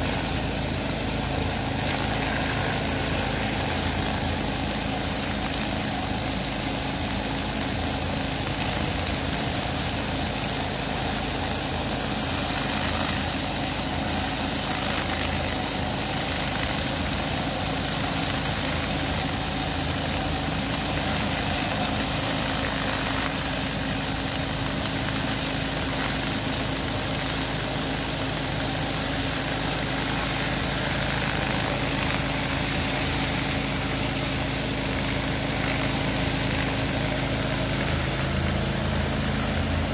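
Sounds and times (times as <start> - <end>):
pressure washer engine running: 0.0 - 39.9
water spray hissing: 8.5 - 39.9.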